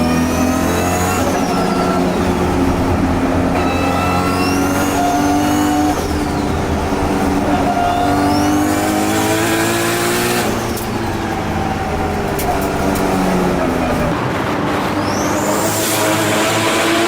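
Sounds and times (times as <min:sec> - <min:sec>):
car engine revving through gears: 0:00.0 - 0:17.0
turbo whistle: 0:03.6 - 0:06.4.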